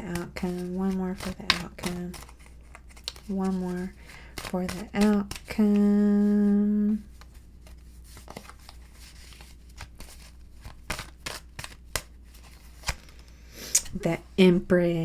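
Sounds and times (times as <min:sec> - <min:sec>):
cards being shuffled: 0:00.0 - 0:14.0.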